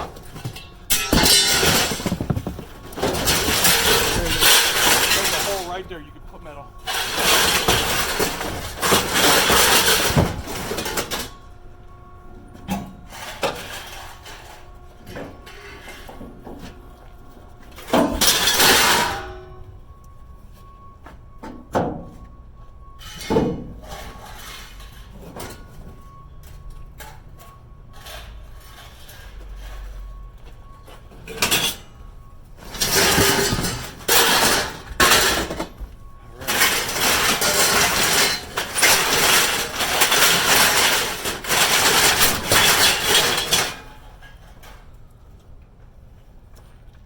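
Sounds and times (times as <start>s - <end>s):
scrap metal crashing into truck bed: 0.0s - 6.0s, 6.8s - 11.4s, 12.8s - 16.8s, 17.8s - 19.6s, 23.0s - 26.2s, 31.2s - 32.0s, 32.6s - 44.8s
metal clanks and knocks: 0.0s - 11.4s, 21.4s - 28.4s, 30.7s - 44.9s.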